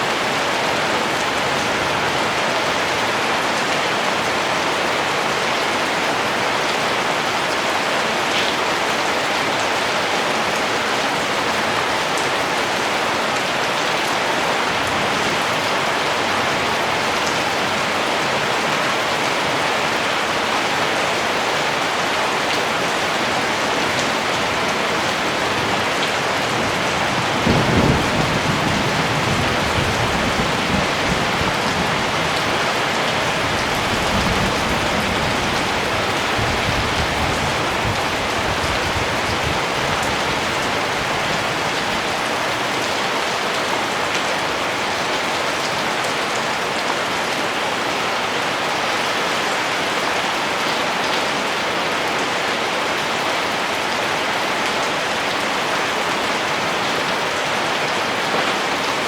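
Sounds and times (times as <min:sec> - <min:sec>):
steady rain: 0:00.0 - 0:59.0.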